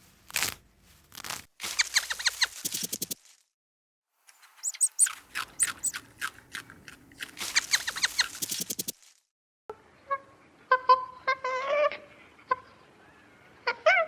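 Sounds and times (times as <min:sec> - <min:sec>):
bird chirping: 0:01.6 - 0:03.2, 0:04.3 - 0:08.9.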